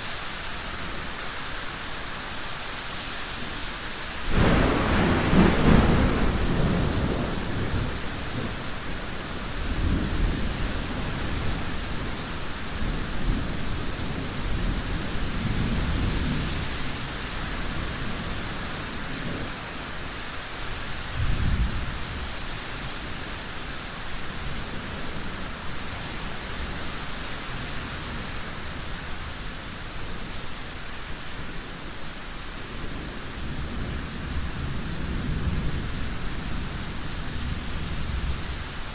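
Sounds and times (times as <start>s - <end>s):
steady rain: 0.0s - 38.9s
thunder rumbling: 4.3s - 12.1s.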